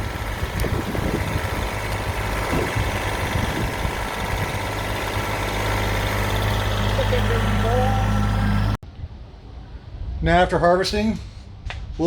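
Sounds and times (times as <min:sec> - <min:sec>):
tractor engine running: 0:00.0 - 0:08.8.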